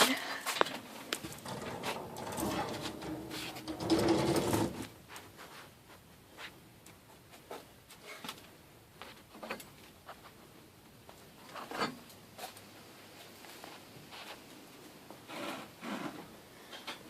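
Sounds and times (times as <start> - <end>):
hand tools rattling clatter: 1.2 - 4.9.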